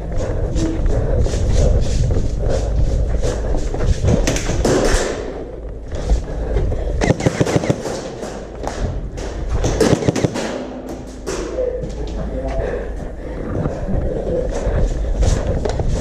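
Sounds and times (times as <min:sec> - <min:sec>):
sharp clicks and thuds: 0:03.0 - 0:11.6, 0:15.2 - 0:16.0.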